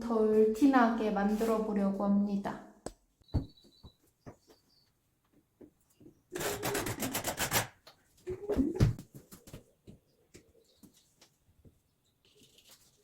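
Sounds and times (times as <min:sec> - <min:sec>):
rubbing scraping strokes: 0:06.4 - 0:07.7.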